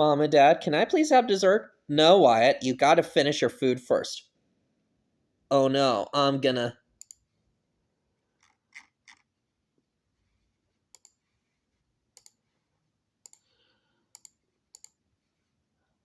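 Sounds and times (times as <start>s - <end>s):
faint clicks: 10.9s - 11.2s, 12.2s - 12.4s, 13.2s - 13.5s, 14.1s - 15.0s.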